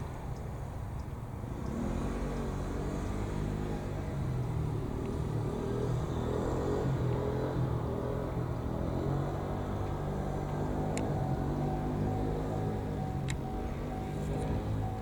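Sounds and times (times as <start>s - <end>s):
diesel railcar engine droning: 7.9s - 15.0s.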